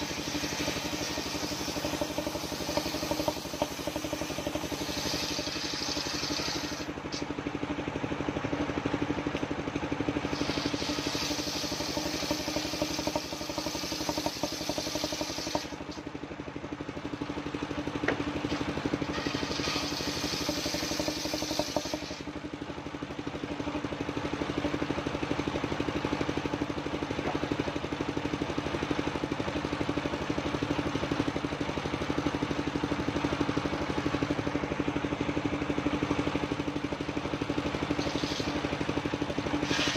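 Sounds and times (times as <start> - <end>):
saw hissing through wood: 0.0 - 7.2, 10.3 - 16.0, 19.0 - 22.3, 37.9 - 38.8, 39.4 - 39.9
sawmill engine running: 0.0 - 39.9.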